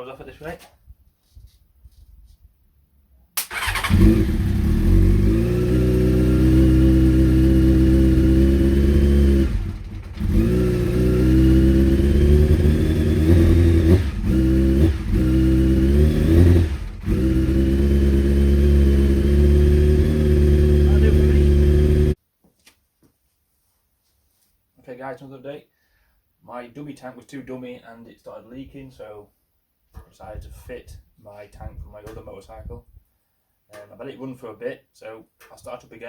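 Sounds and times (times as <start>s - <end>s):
motorcycle engine running unevenly: 5.6s - 22.2s.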